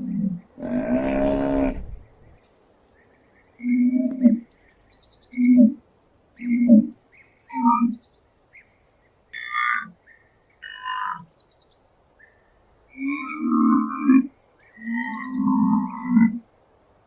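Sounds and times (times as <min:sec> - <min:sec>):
higher animal calls: 0:00.0 - 0:02.1
low animal calls: 0:00.0 - 0:02.2, 0:12.9 - 0:16.4.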